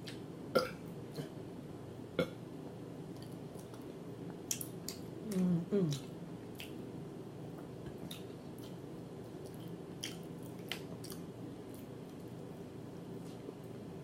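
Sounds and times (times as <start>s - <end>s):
steady low hum: 0.0s - 14.0s
person chewing food: 3.1s - 6.8s, 7.5s - 12.4s.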